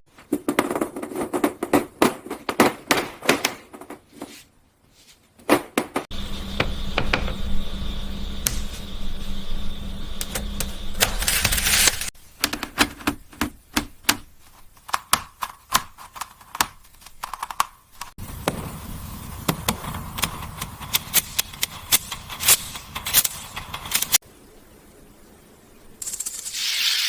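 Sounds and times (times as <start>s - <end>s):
steady running noise: 6.1s - 12.0s.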